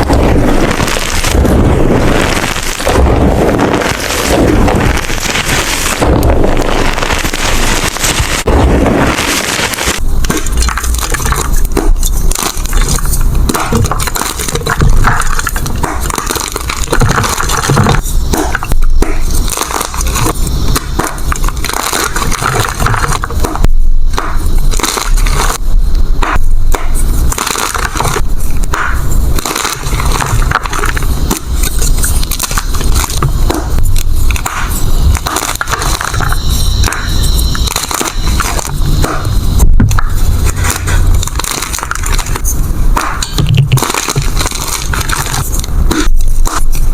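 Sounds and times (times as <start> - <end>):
chalk crunching: 39.9 - 46.9.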